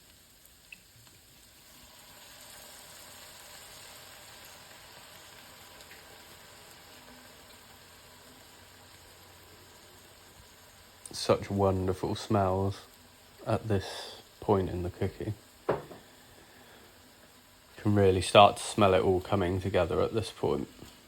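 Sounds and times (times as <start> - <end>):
sauce sizzling and bubbling: 0.0 - 21.0.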